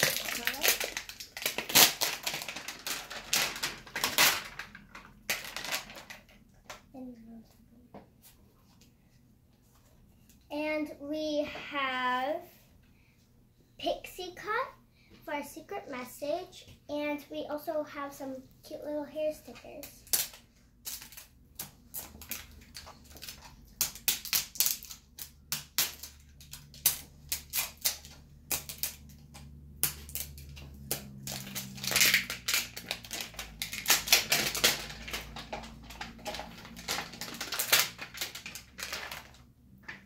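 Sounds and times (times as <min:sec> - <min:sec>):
plastic wrapping crinkling: 0:00.0 - 0:06.4, 0:20.0 - 0:40.0.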